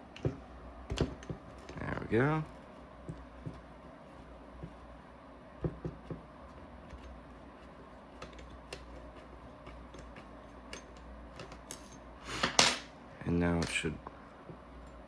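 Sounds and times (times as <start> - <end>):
metal parts clicking and tapping: 9.9 - 12.0.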